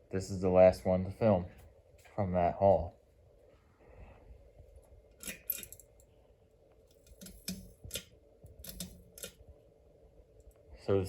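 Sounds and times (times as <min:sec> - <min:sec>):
chain rattling: 0:05.2 - 0:06.0
pull-chain switch clicks: 0:07.0 - 0:09.4.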